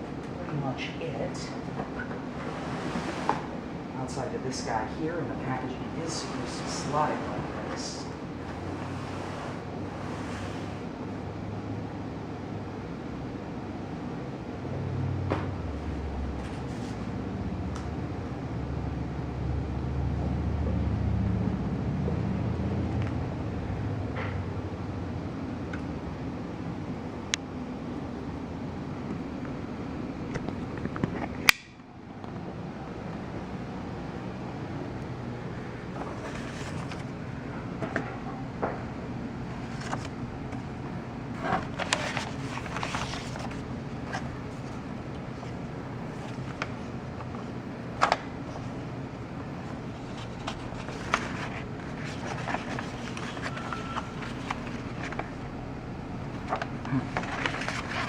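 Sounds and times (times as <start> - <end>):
fan-like room hum: 0.0 - 58.0
cardboard and paper rustling: 35.9 - 37.2, 39.5 - 40.7, 41.3 - 46.9, 49.8 - 55.5, 56.3 - 58.0.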